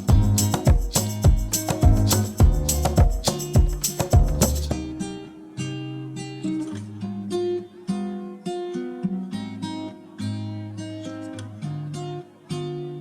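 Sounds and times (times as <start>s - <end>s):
beats: 0.0s - 5.0s
acoustic guitar picking: 0.0s - 13.0s.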